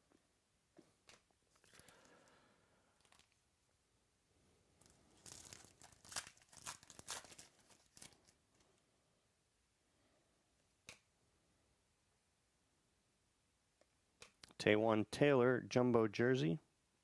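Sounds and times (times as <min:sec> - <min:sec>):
card pack wrapper tearing: 0:03.0 - 0:03.4, 0:04.8 - 0:08.4.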